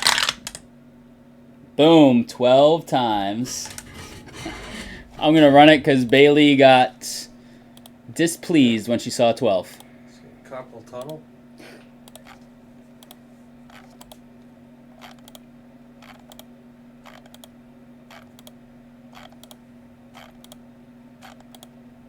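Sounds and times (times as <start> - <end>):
low electrical hum: 0.0 - 22.0
computer mouse clicking: 12.1 - 12.4, 13.0 - 14.2, 15.0 - 15.4, 16.0 - 16.5, 17.1 - 17.5, 18.2 - 18.6, 19.2 - 19.6, 20.2 - 20.6, 21.2 - 21.7.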